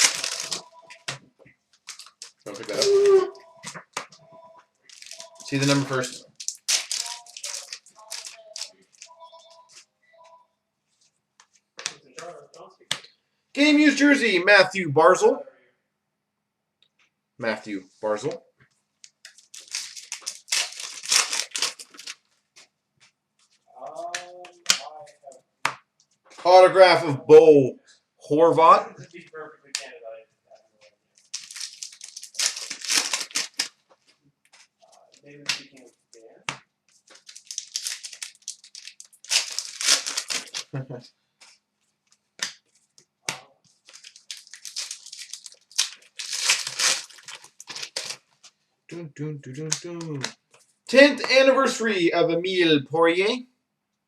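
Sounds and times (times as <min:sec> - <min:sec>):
plastic wrapper crinkling and tearing: 0:00.0 - 0:01.2, 0:01.8 - 0:03.2, 0:04.9 - 0:09.8, 0:19.0 - 0:22.3, 0:31.2 - 0:33.8, 0:37.0 - 0:40.8, 0:43.8 - 0:48.5
man speaking: 0:02.5 - 0:03.4, 0:05.4 - 0:06.2, 0:13.6 - 0:15.5, 0:17.4 - 0:18.4, 0:23.8 - 0:25.4, 0:26.4 - 0:30.2, 0:40.8 - 0:41.0, 0:48.9 - 0:50.3, 0:50.9 - 0:53.4.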